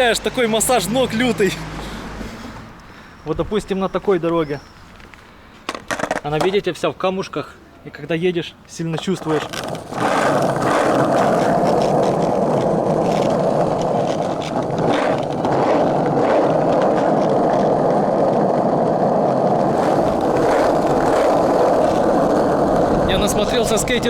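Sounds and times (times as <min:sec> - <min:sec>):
skateboard wheels rolling on asphalt: 0:00.0 - 0:02.8, 0:04.2 - 0:06.8, 0:08.6 - 0:24.0
grit clicking under wheels: 0:08.9 - 0:24.0.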